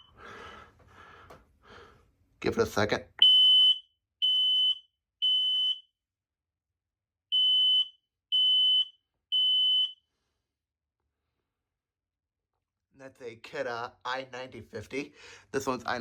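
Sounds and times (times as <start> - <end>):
smoke alarm beeping: 3.2 - 5.9, 7.3 - 10.1.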